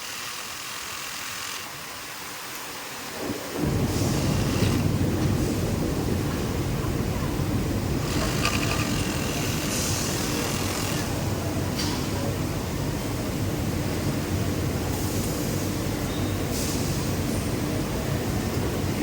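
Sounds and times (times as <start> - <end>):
sewing machines running: 0.0 - 1.8, 4.1 - 4.9, 8.0 - 11.2.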